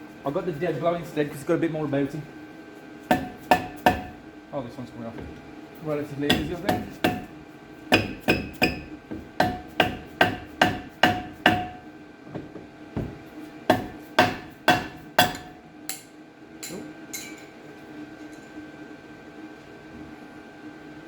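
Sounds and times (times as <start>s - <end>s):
hammer striking metal brake disc: 8.0s - 11.8s.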